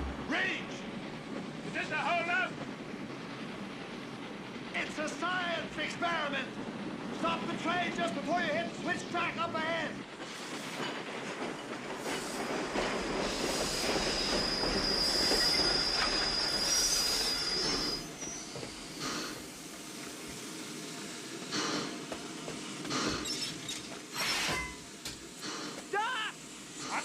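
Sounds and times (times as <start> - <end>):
train running noise: 0.0 - 27.0
train wheels squealing: 11.6 - 19.6, 22.9 - 25.6.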